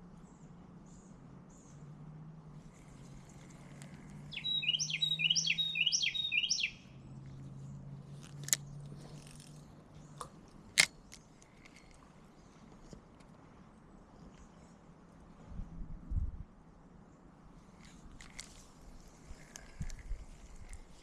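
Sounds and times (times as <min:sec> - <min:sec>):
songbird singing: 0:00.0 - 0:13.4, 0:17.0 - 0:21.0.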